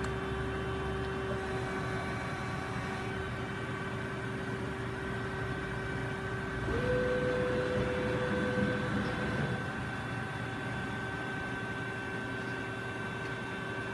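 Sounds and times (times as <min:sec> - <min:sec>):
machine hum: 0:00.3 - 0:13.5
motor whine rising in pitch: 0:06.4 - 0:11.6.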